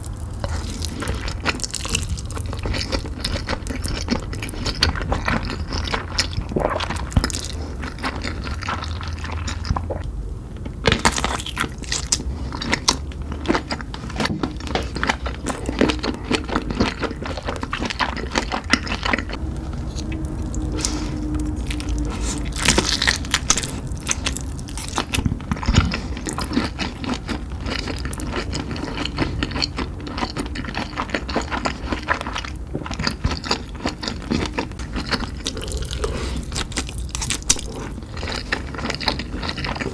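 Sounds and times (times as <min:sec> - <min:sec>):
chewing and biting: 0:00.0 - 0:39.9
wet mouth sounds: 0:11.1 - 0:39.9.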